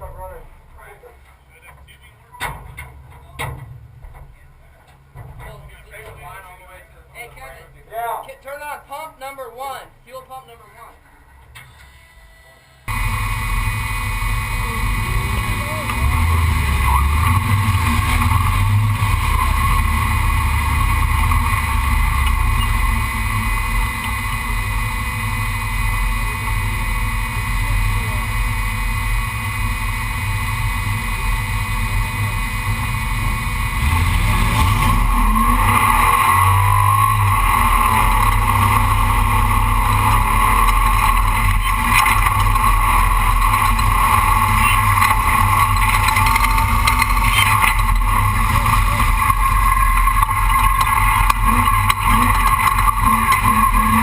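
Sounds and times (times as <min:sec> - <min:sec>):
drivetrain and road noise: 0:00.0 - 0:54.0
truck engine running and revving: 0:12.9 - 0:54.0.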